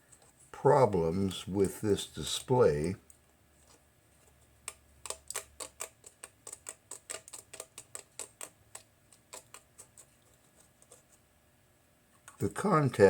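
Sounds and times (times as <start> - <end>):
small parts clicking and tapping: 4.6 - 11.0.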